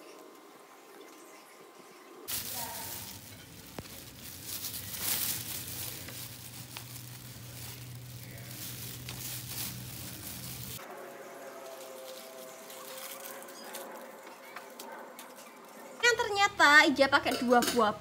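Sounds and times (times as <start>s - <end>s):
steady low hum: 2.3s - 10.8s.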